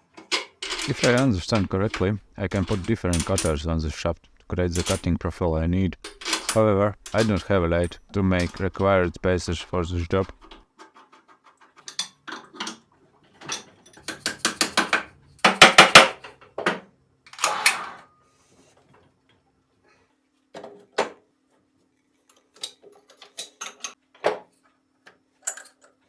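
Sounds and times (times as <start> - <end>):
metal tools clinking: 0.3 - 3.6, 4.7 - 5.1, 6.0 - 9.2, 25.4 - 26.0.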